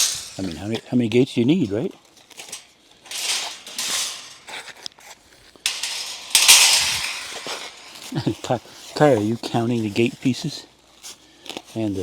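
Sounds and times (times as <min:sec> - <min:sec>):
metal fence panels clattering: 0:00.0 - 0:00.8, 0:02.4 - 0:04.9, 0:05.6 - 0:08.5.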